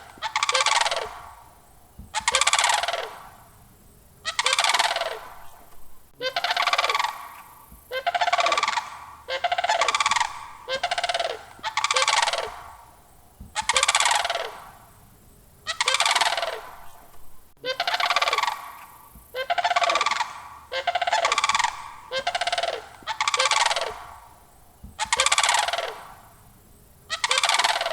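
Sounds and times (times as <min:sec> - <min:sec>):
crane rattling bugle calls: 0:00.0 - 0:03.2, 0:04.2 - 0:05.2, 0:06.1 - 0:14.7, 0:15.6 - 0:26.3, 0:27.1 - 0:27.9.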